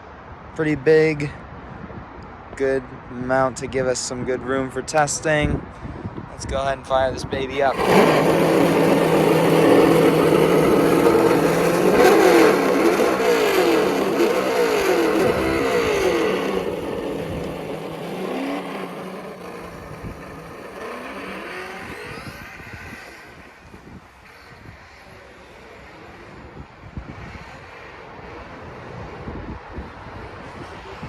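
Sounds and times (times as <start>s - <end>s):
simulated engine sound revving: 7.4s - 23.4s.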